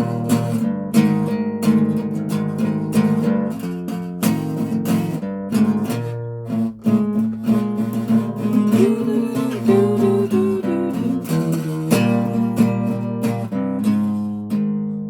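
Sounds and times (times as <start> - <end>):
acoustic guitar strummed: 0.0 - 15.0.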